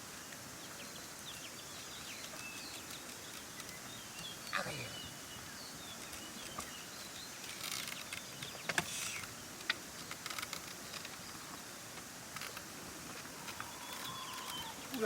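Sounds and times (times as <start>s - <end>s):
faint birdsong: 0.0s - 15.0s
soil scraping and rustling: 5.8s - 15.0s.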